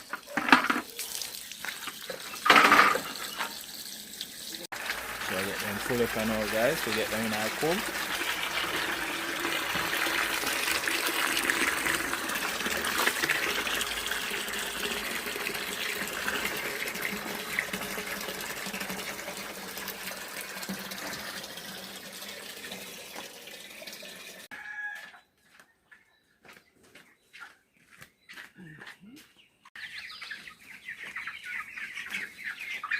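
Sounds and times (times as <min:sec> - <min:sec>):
water filling a container: 0:00.0 - 0:24.5.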